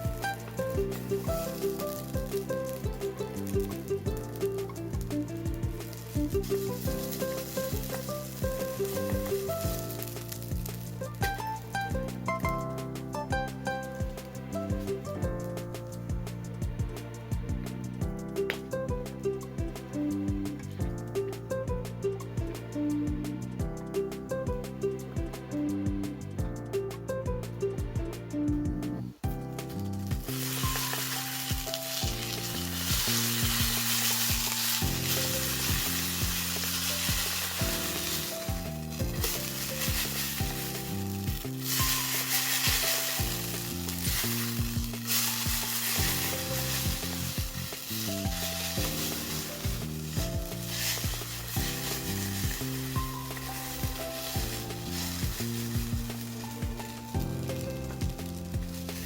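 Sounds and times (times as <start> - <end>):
food sizzling in a pan: 0.0 - 16.2, 29.6 - 59.0
background music: 0.0 - 59.0.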